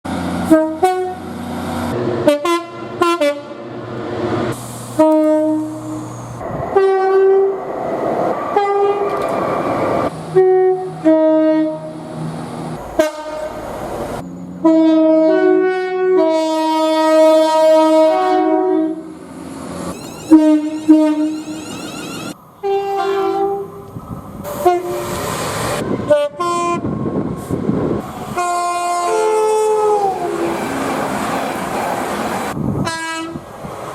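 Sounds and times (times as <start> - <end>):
train horns: 0.4 - 3.8, 5.0 - 7.6, 8.5 - 9.2, 10.3 - 12.0, 12.8 - 13.7, 14.6 - 19.2, 19.9 - 25.2, 25.8 - 27.0, 28.2 - 30.9, 32.8 - 33.4.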